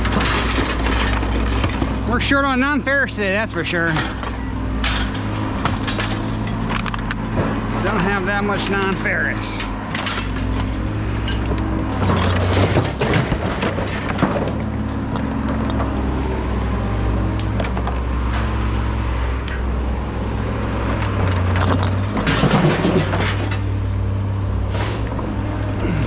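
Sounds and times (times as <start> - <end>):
scrap metal clanking: 0.0 - 2.6, 3.3 - 15.0, 21.1 - 23.7
vehicle engine humming: 0.0 - 26.0.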